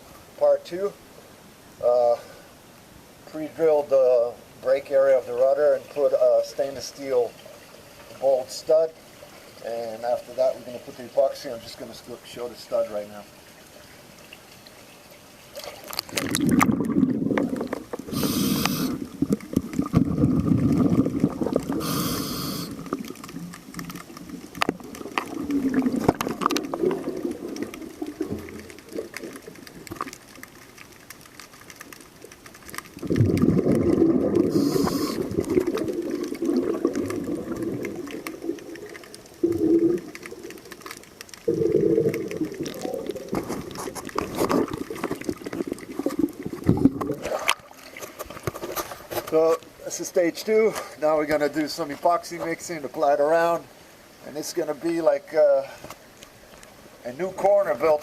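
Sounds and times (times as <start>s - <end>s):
exhaust bubbles rushing: 16.1s - 30.0s, 33.0s - 40.8s, 41.4s - 47.6s
scuba regulator inhalation hiss: 18.0s - 19.2s, 21.7s - 22.9s, 34.4s - 35.4s.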